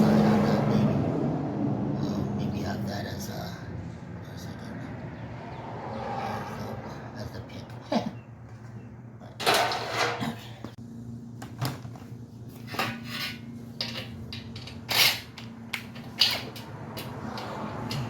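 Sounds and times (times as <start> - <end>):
sheet metal parts clanking: 9.4 - 10.4, 12.6 - 18.0.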